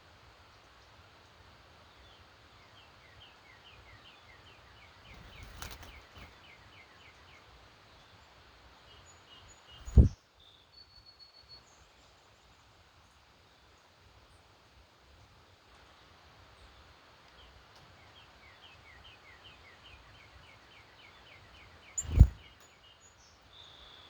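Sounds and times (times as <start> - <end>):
rustle: 0.0 - 24.0
bird chirping: 9.0 - 11.8, 18.5 - 24.0.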